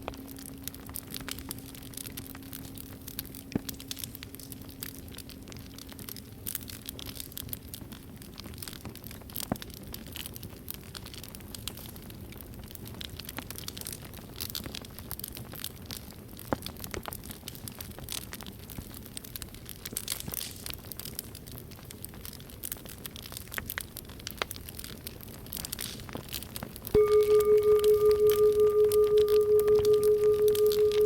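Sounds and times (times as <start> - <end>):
campfire crackling: 0.0 - 31.0
singing bowl hum: 27.0 - 31.0.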